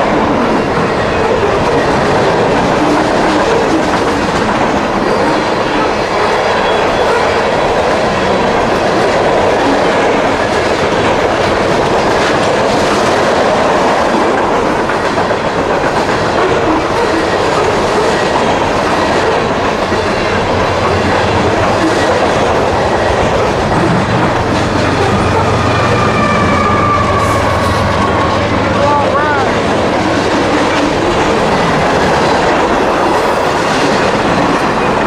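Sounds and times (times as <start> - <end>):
train wheels clacking over rail joints: 0.0 - 35.0.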